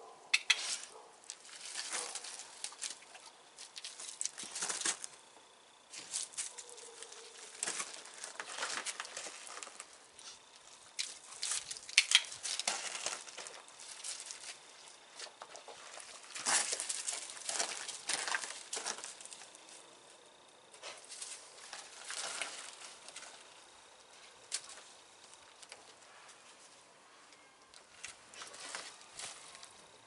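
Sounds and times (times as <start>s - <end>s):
rustling and scuffling: 0.4s - 5.3s, 5.9s - 20.0s, 20.8s - 26.9s, 27.8s - 30.0s
faint high tone: 27.0s - 27.7s.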